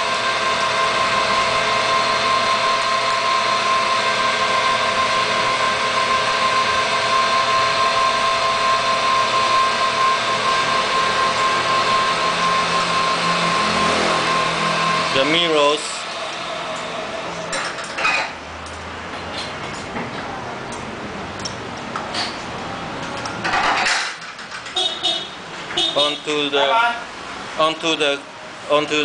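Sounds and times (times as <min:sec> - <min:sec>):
blower motor whine: 0:00.0 - 0:17.7.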